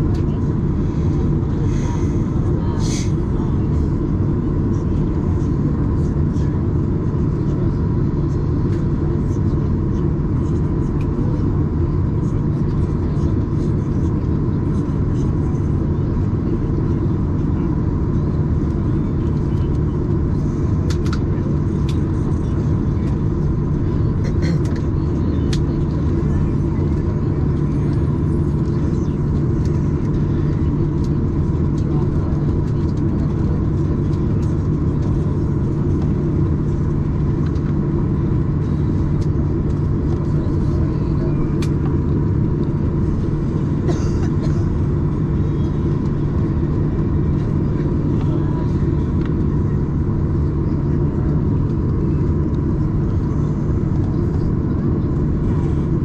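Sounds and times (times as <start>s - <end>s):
airliner cabin engine rumble: 0.0s - 56.0s
constant low hum: 0.0s - 56.0s.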